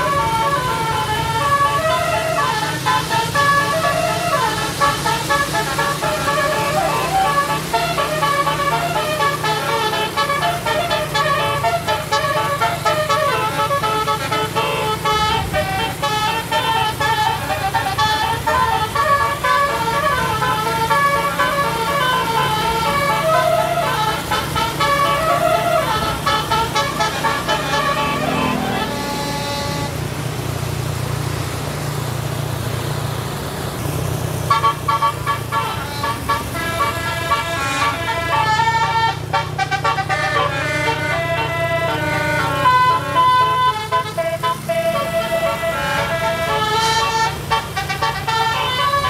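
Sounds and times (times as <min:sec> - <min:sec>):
multi-tone air horn melody: 0:00.0 - 0:30.7, 0:34.1 - 0:49.0
bus engine running: 0:00.0 - 0:49.0.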